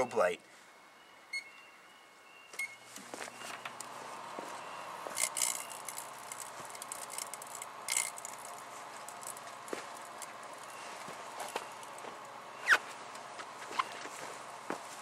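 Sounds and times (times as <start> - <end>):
microwave oven humming: 2.8 - 15.0
sharp clicks and crackles: 5.1 - 12.4.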